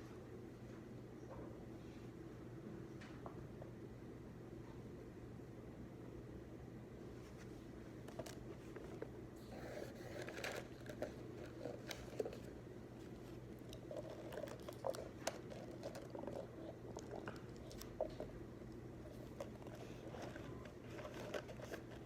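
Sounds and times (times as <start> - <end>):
low room hum: 0.0 - 22.0
paper rustling: 7.2 - 16.5, 19.1 - 22.0.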